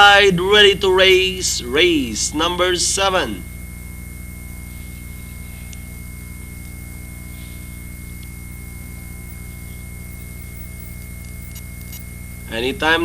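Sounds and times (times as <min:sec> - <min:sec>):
electrical mains hum: 0:00.0 - 0:13.0
faint high-pitched whine: 0:00.0 - 0:13.0
light hiss: 0:02.8 - 0:13.0.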